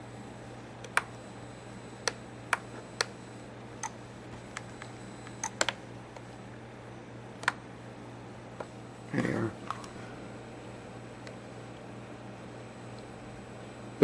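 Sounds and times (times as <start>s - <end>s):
steady low hum: 0.0s - 14.0s
computer mouse clicking: 0.8s - 1.1s, 3.8s - 6.3s, 7.4s - 7.6s.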